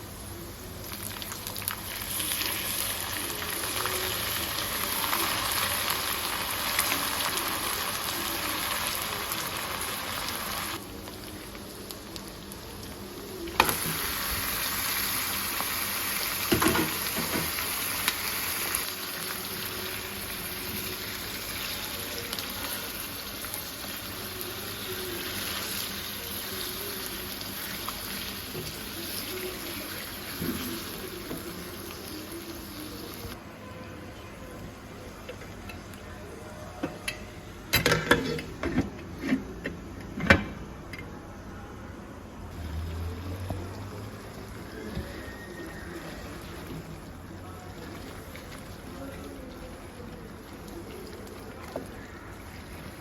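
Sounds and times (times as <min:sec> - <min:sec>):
chicken sizzling in hot oil: 0:00.8 - 0:33.4.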